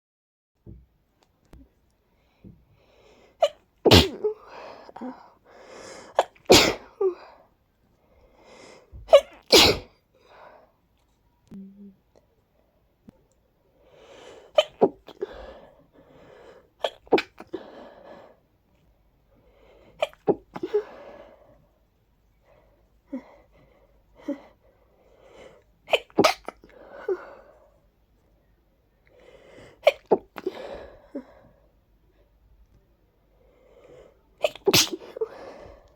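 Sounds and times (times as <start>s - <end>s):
person sneezing: 3.4s - 4.5s, 6.1s - 7.2s, 9.1s - 9.9s, 16.8s - 17.6s, 25.9s - 26.7s, 29.8s - 30.8s, 34.4s - 35.8s.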